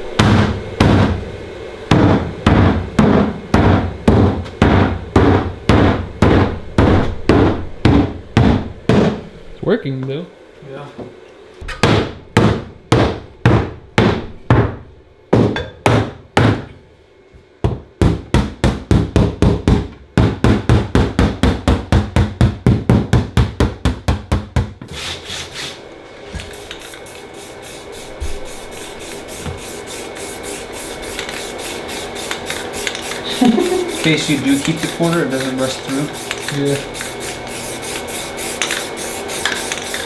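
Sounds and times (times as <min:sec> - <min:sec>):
scraping strokes on metal: 0:26.6 - 0:40.0.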